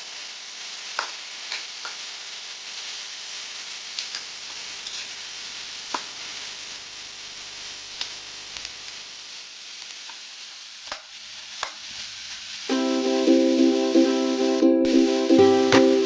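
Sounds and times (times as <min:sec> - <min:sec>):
food sizzling in oil: 0:00.0 - 0:16.0.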